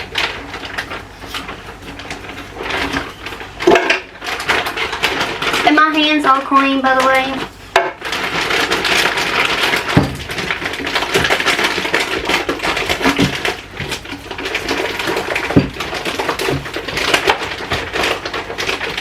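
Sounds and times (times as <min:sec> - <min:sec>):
dishes and utensils clattering: 0:00.0 - 0:05.8.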